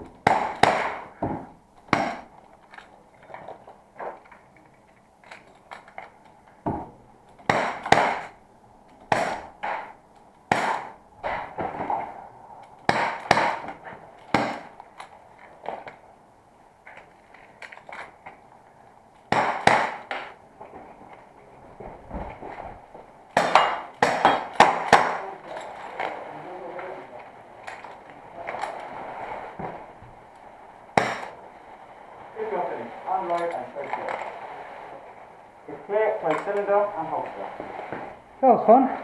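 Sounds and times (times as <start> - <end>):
airsoft revolver shots: 0.2 - 1.2, 7.5 - 8.4, 9.1 - 11.0, 12.9 - 13.7, 14.3 - 14.8, 19.3 - 20.4, 23.4 - 25.3, 31.0 - 31.4.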